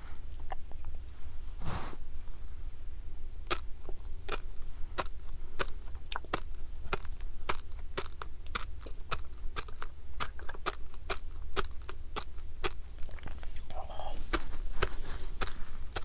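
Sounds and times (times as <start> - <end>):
low steady hum: 0.0 - 16.0
chewing fish roe pops and crunches: 5.0 - 13.7.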